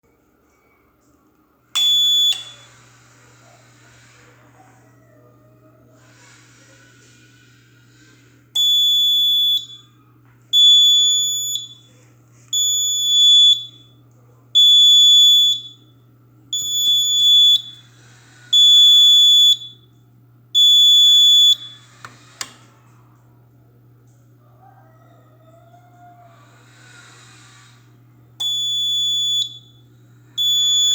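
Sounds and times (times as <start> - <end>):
fire alarm beeping: 1.8 - 2.7, 8.6 - 14.0, 14.6 - 17.9, 18.5 - 22.0, 28.4 - 29.8, 30.4 - 30.9.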